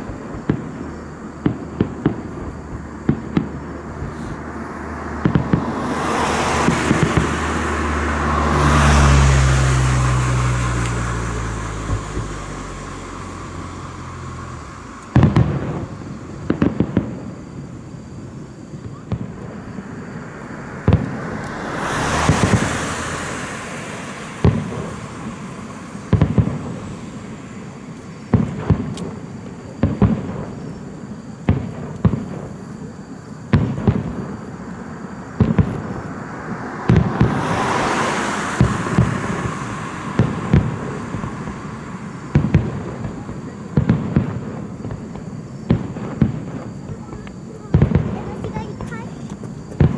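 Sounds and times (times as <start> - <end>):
fireworks bangs and cracks: 0.0 - 49.9
rushing noise: 2.5 - 16.4, 19.5 - 28.3, 34.4 - 43.1.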